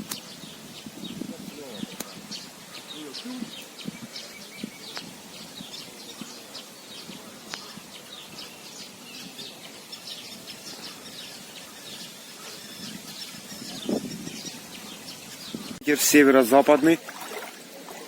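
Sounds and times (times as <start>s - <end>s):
small birds chirping: 0.0s - 16.7s.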